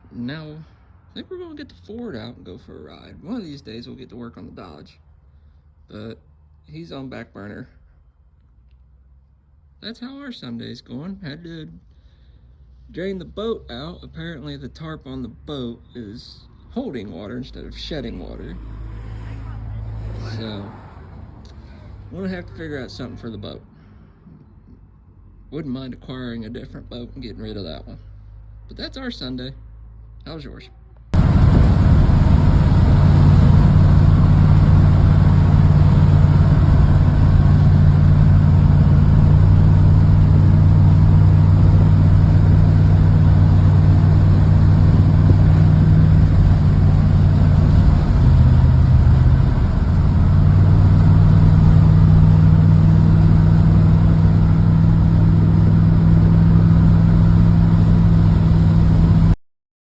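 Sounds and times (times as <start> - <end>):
vehicle engine running: 31.2 - 59.4.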